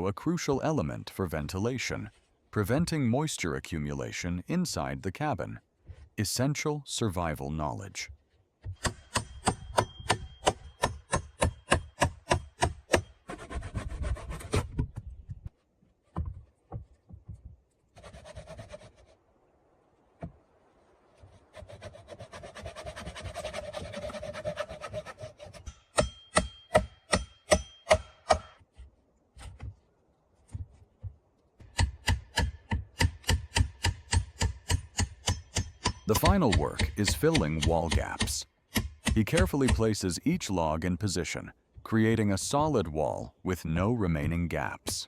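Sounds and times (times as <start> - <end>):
scraping on wood: 21.5 - 25.9.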